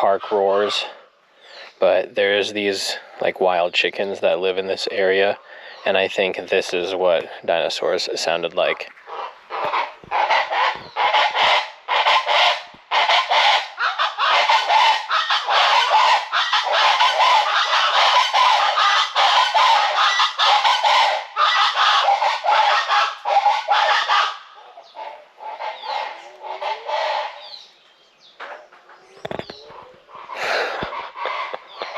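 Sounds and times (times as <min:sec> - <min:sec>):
flock of birds calling: 0:00.0 - 0:31.9.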